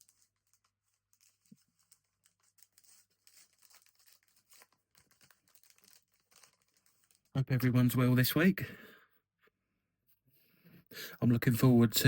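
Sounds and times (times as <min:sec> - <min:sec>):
foil card pack crinkling: 0:00.0 - 0:07.4.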